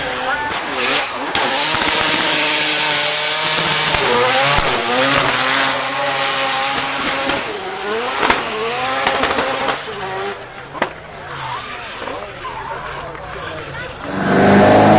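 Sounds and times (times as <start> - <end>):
car engine revving hard: 0.6 - 10.3, 14.0 - 14.9
loud exhaust crack: 14.0 - 14.9.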